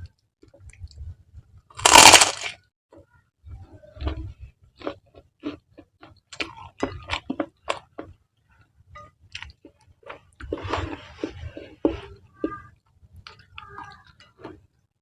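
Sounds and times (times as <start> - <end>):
chewing wet noodles: 3.8 - 15.0.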